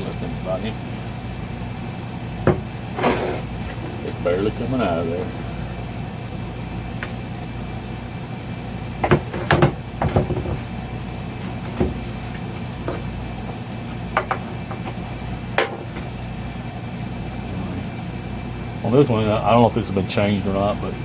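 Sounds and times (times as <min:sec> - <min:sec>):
steady low hum: 0:00.0 - 0:21.0
tools knocking and clicking: 0:14.2 - 0:15.0.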